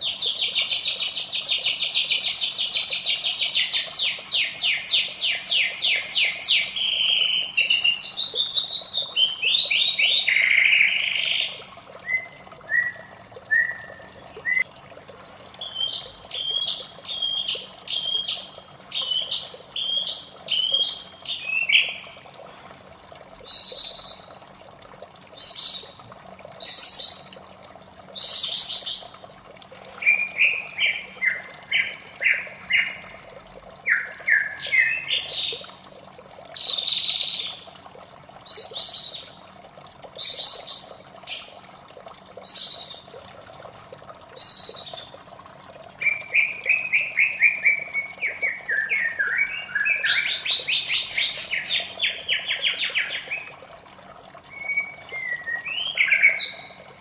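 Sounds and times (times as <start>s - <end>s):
running water: 0.0s - 57.0s
bird singing whistles: 12.0s - 14.6s, 46.0s - 50.5s, 54.5s - 56.8s.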